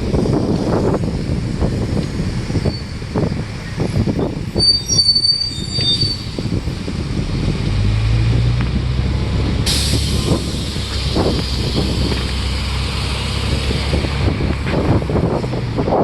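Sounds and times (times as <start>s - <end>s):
bus rumbling in traffic: 0.0s - 16.0s
engine hum: 0.0s - 16.0s
high squeal: 2.5s - 6.5s.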